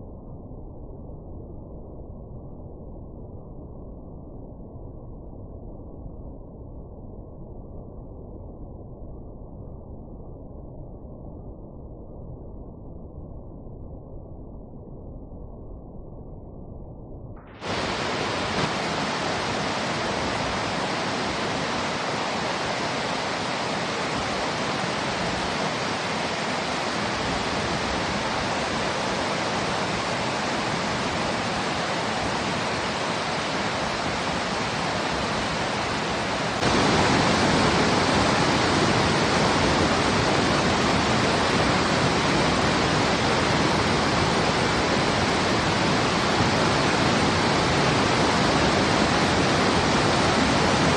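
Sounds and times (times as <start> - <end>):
river water rushing: 17.6 - 50.9.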